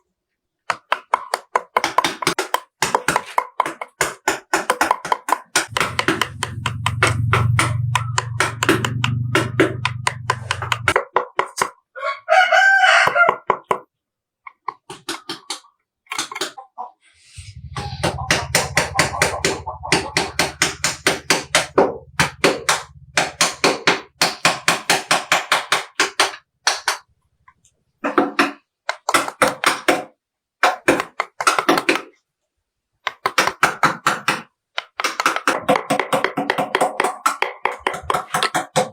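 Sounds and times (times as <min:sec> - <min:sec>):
mallet tapping chisel into wood: 0:00.8 - 0:11.7, 0:18.0 - 0:27.0
low hum: 0:05.7 - 0:11.0, 0:17.3 - 0:24.2
rooster crowing: 0:12.0 - 0:13.4.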